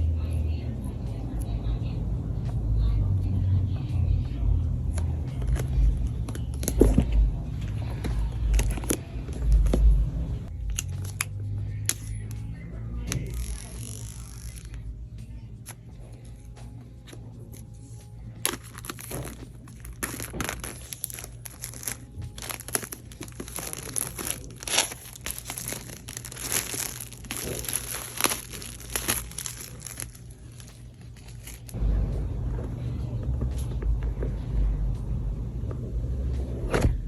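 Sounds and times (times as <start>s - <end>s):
low rumble: 17.4s - 37.0s
packaging crinkling: 18.4s - 31.8s.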